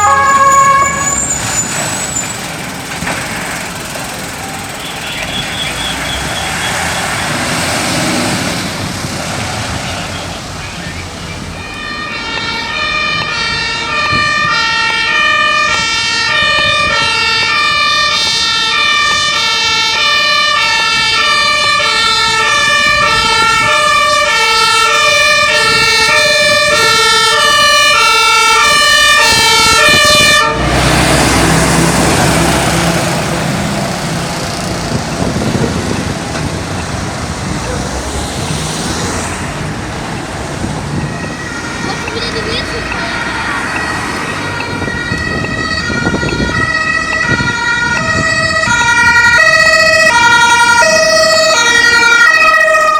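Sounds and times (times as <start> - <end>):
two-tone emergency siren: 0.0 - 2.4, 9.7 - 34.3, 34.9 - 52.9
road noise: 0.0 - 52.9
vehicle engine: 0.0 - 52.9.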